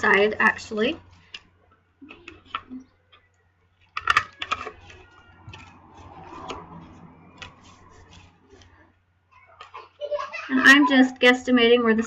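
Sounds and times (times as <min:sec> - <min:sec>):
card sliding: 0:04.4 - 0:08.8.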